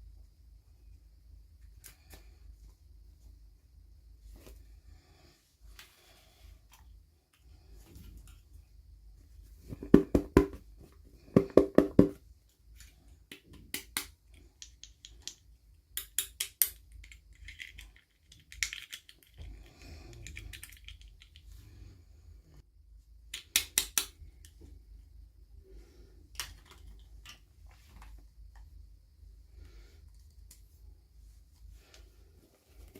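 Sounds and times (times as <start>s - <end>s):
plastic toy pieces clicking: 16.0s - 19.5s, 20.1s - 21.4s.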